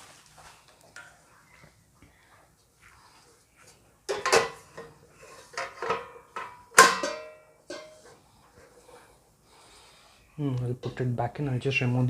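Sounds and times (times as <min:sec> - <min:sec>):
metal pan and basket knocking: 0:04.1 - 0:04.9, 0:05.6 - 0:08.0.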